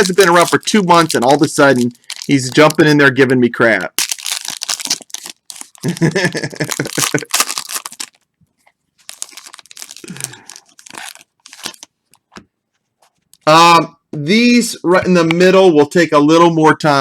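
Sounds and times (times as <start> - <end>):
card pack wrapper crinkling: 0.0 - 12.4.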